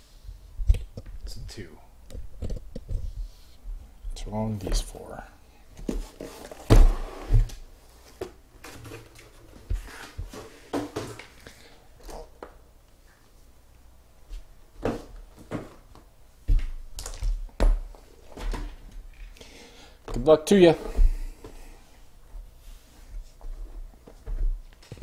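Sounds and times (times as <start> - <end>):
box thunks: 5.8 - 7.6.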